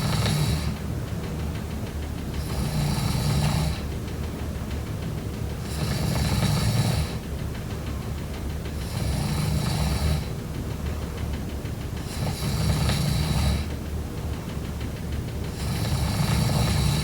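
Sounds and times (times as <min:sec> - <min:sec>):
person snoring: 0:00.0 - 0:00.8, 0:02.4 - 0:03.8, 0:08.8 - 0:10.3, 0:12.1 - 0:13.7, 0:15.6 - 0:17.0
quiet breathing: 0:00.0 - 0:00.8.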